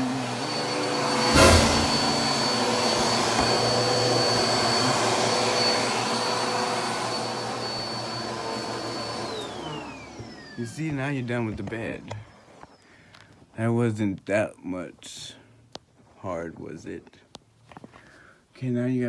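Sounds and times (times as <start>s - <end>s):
vacuum cleaner whining: 0.0s - 12.8s
loud knock: 1.3s - 3.6s.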